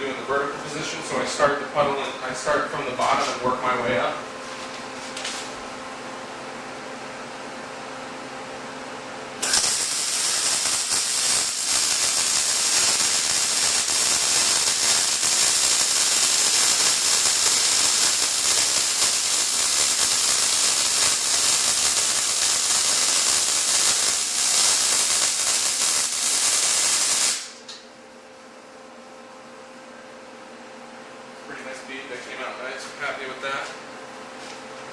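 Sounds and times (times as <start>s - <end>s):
steady low hum: 0.0s - 19.4s
welder arc crackling and hissing: 9.4s - 27.8s.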